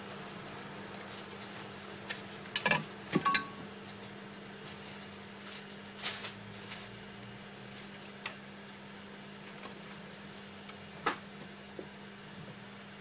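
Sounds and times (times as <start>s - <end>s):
steady low hum: 2.2s - 13.0s.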